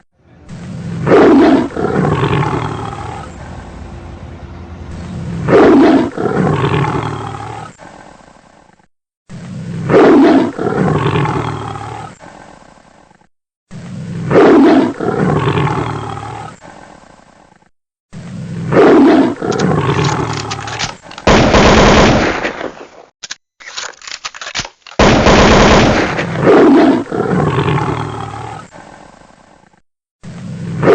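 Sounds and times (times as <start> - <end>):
lion roar: 0.4 - 3.6, 5.1 - 21.2, 26.1 - 30.9.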